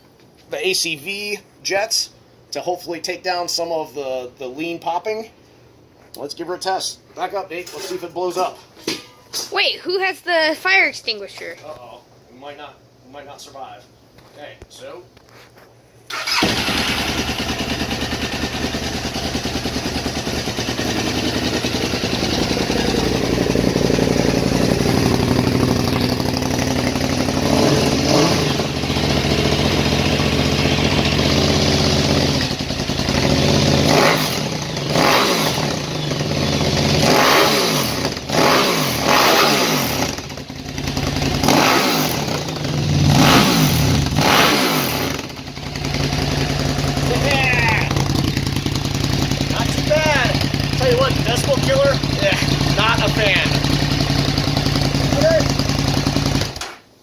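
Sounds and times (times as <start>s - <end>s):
engine revving: 16.1s - 56.6s
motorcycle engine starting and idling: 16.1s - 56.9s.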